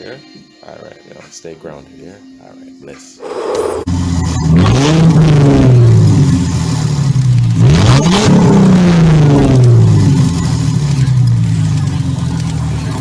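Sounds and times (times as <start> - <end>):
car engine revving: 3.2 - 13.0.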